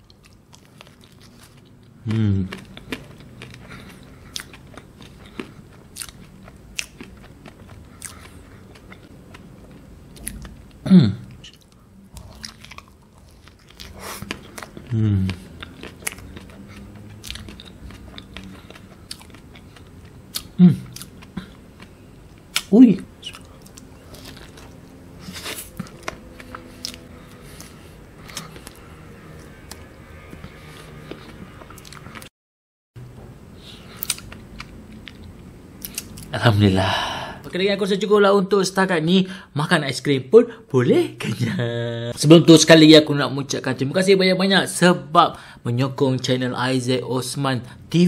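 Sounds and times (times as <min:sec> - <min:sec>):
low steady hum: 0:00.0 - 0:32.3, 0:33.0 - 0:48.0
person chewing: 0:00.0 - 0:32.3, 0:33.6 - 0:36.4.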